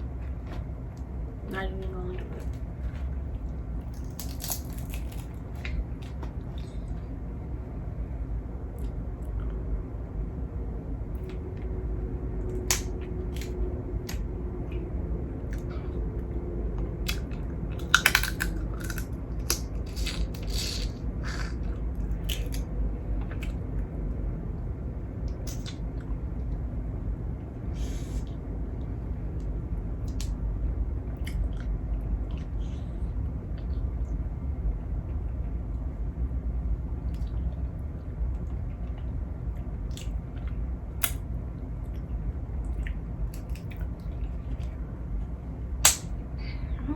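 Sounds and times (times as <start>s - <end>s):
steady low hum: 0.0s - 46.9s
crab shells cracking: 3.8s - 5.4s, 17.1s - 21.6s.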